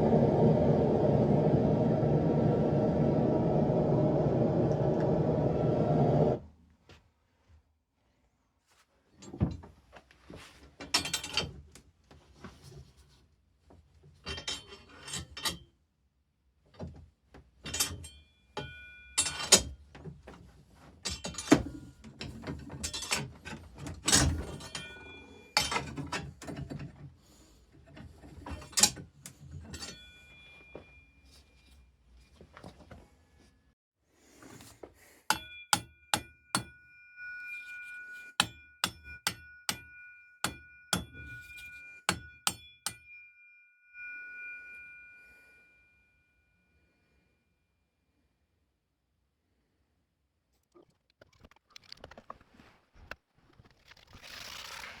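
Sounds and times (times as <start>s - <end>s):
hammer striking steel: 35.3s - 37.0s, 38.4s - 43.2s.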